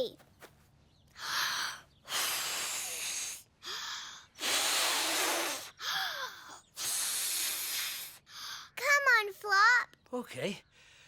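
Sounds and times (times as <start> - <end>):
child blowing out hard: 2.1 - 3.4, 4.4 - 6.2, 6.8 - 8.2.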